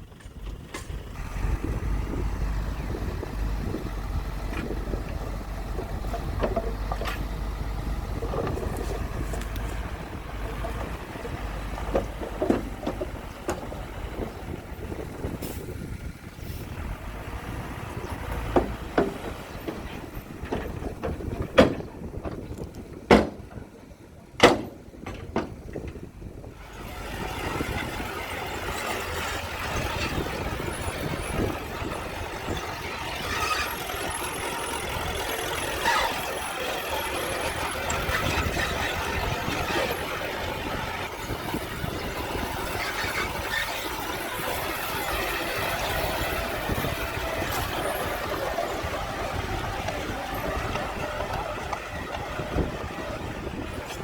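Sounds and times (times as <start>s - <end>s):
diesel engine running: 0.0s - 54.0s
high machine squeaks: 33.0s - 39.0s.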